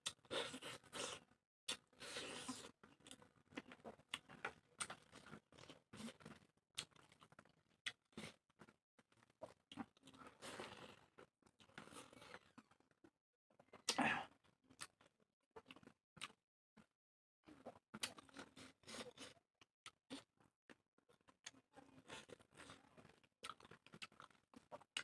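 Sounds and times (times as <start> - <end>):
chewing and mouth clicks: 1.7 - 12.8, 14.7 - 16.4, 17.5 - 20.3, 21.2 - 25.0.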